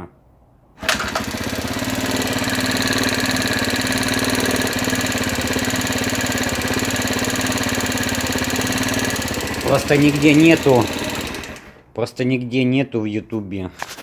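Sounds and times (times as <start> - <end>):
rapid valve tapping: 0.8 - 11.8
scooter engine idling: 0.8 - 11.8.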